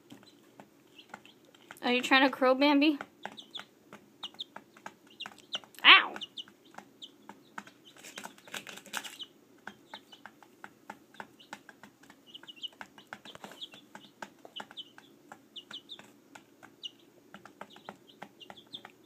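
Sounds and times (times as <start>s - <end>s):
chicks peeping: 0.0s - 19.0s
wings flapping: 8.0s - 9.2s.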